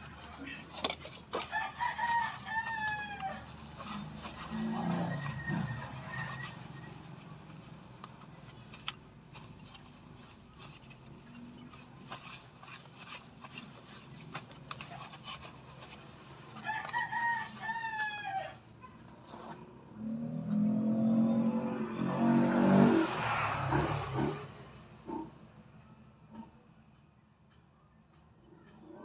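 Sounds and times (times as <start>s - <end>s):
rooster crowing: 1.4s - 3.6s, 16.6s - 18.6s.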